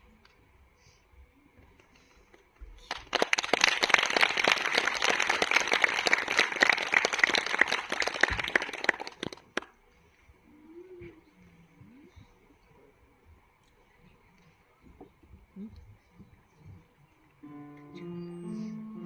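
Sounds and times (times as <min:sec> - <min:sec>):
applause: 0:02.8 - 0:09.7.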